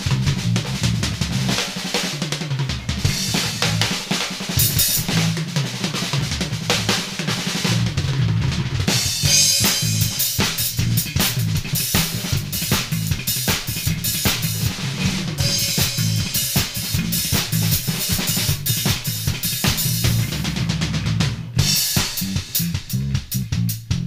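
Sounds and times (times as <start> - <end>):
bass guitar line: 0.0 - 24.0
drum kit playing funk groove: 0.0 - 24.0
cymbals: 8.9 - 20.1.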